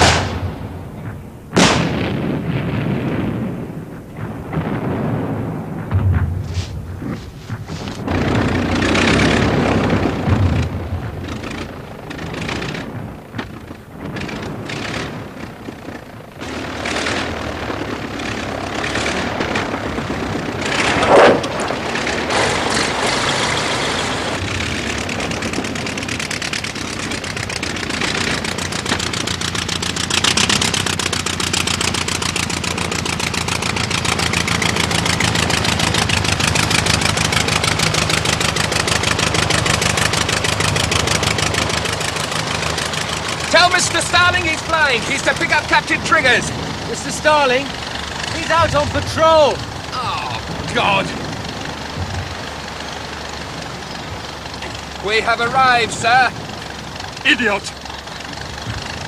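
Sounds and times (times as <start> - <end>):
engine running: 3.4 - 59.0
uneven loud noises: 45.6 - 55.1.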